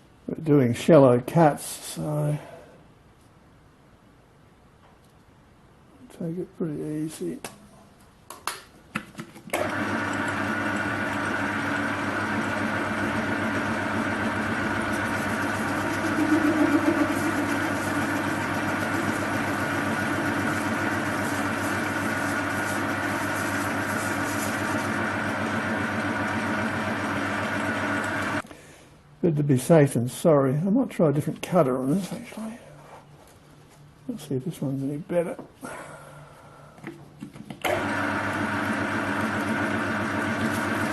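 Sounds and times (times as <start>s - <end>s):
metal lathe motor humming: 9.6s - 28.4s, 37.7s - 40.9s.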